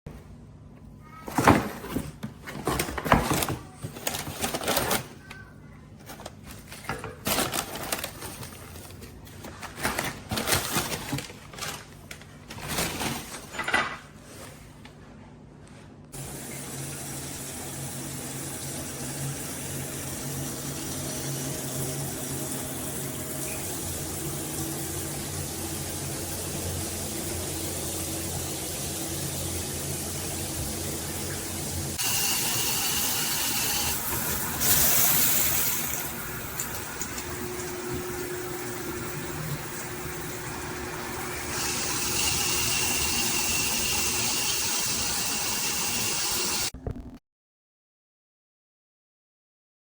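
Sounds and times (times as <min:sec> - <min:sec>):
water spraying from shower head: 0:16.2 - 0:46.7.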